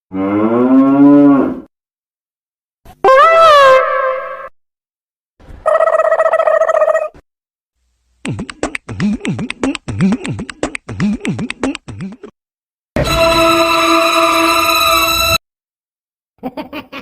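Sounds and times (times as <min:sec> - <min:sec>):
beatboxing clicks and swoops: 0:08.2 - 0:12.3.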